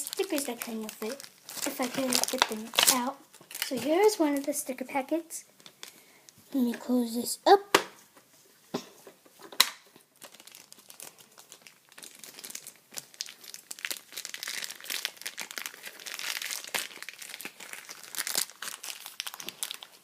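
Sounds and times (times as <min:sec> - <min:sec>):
plastic packet crinkling: 0:00.0 - 0:04.9, 0:05.6 - 0:06.0, 0:10.0 - 0:20.0.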